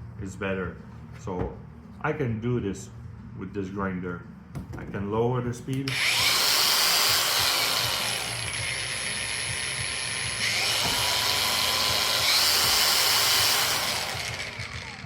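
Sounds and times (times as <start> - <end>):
cordless angle grinder running: 5.9 - 15.0.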